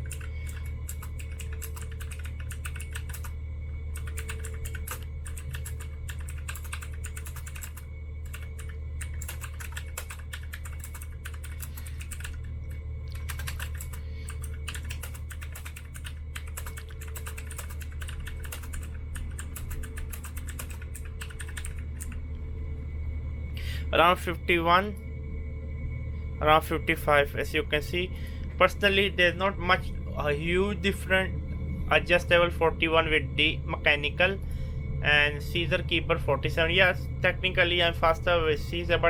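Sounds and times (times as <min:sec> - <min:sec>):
typing on mechanical keyboard: 0:00.0 - 0:03.3, 0:04.0 - 0:12.4, 0:13.1 - 0:22.2
steady low hum: 0:00.0 - 0:39.0.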